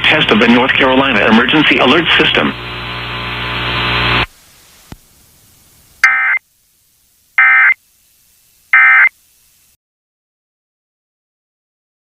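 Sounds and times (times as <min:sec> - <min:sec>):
electronic data burst screeches: 0:08.8 - 0:09.1.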